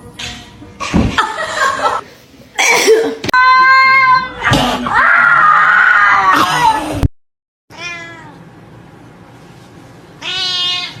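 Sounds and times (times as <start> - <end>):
cat meowing: 7.7 - 8.4, 10.2 - 11.0.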